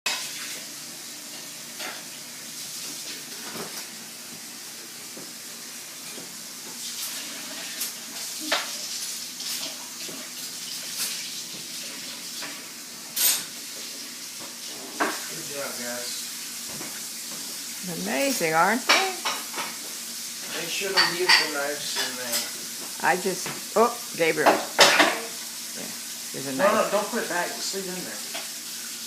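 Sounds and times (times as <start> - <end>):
dishes and cutlery clattering: 20.8 - 22.6, 24.5 - 25.3.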